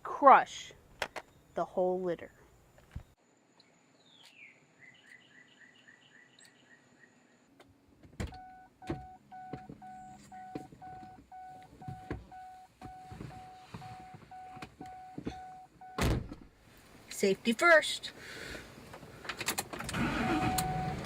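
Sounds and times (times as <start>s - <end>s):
faint outdoor chirping: 0.2s - 16.0s
knocks and thumps in a car: 8.0s - 16.5s
car warning chime beeping: 8.4s - 16.0s, 20.0s - 21.0s.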